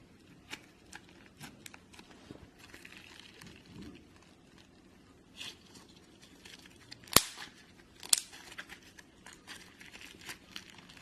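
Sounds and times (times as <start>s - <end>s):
sharp slime pops: 7.1s - 8.4s.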